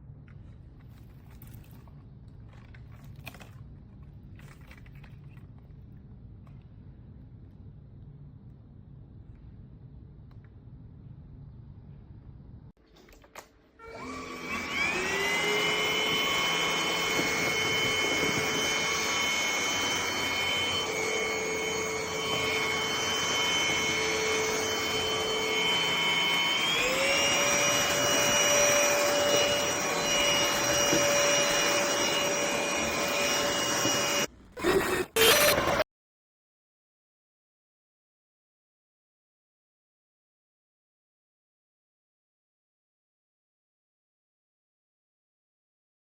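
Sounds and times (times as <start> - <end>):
stick vacuum motor whine: 13.8 - 35.8.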